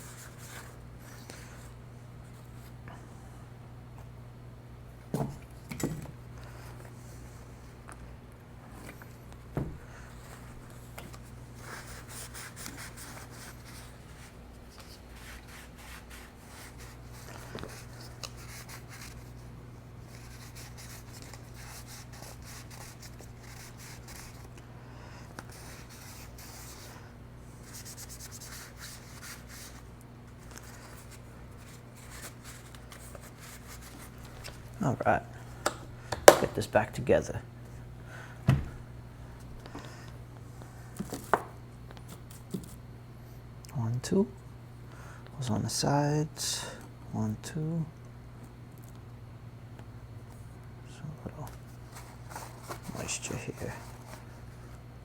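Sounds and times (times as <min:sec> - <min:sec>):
steady low hum: 0:00.0 - 0:55.0
sharp knocks of parts: 0:35.6 - 0:36.6.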